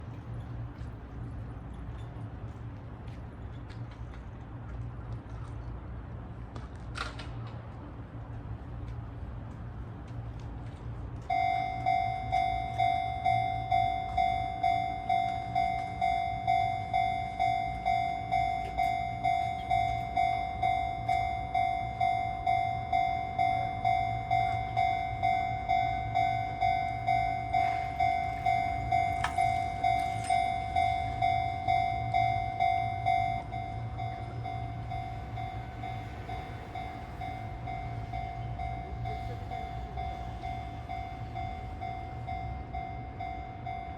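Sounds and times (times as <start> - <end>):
level-crossing warning bell ringing: 11.2 - 43.9.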